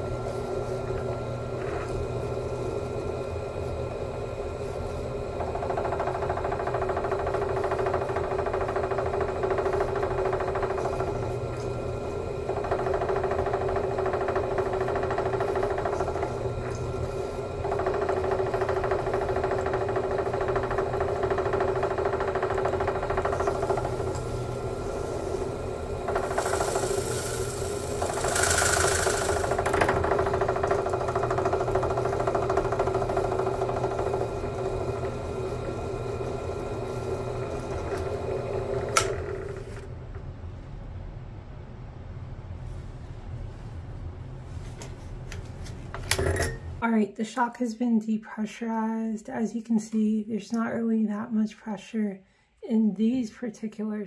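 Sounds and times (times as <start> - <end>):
electric motor running: 0.0 - 40.0
hissing rush of air: 23.8 - 29.6.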